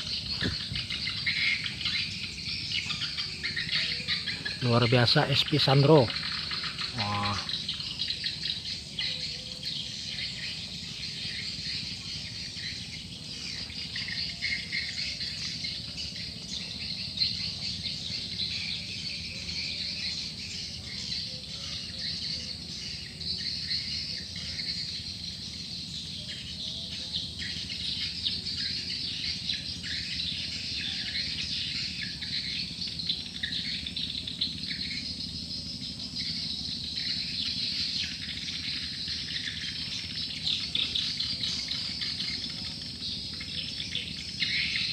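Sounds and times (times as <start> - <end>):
swiftlets twittering: 0.0 - 19.5
recorded swiftlet calls: 0.0 - 44.9.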